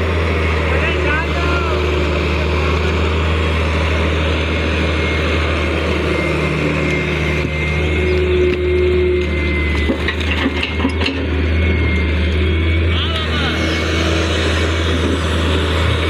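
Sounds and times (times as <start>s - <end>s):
diesel machinery engine hum: 0.0s - 16.0s
knocks and clatters: 9.7s - 11.3s.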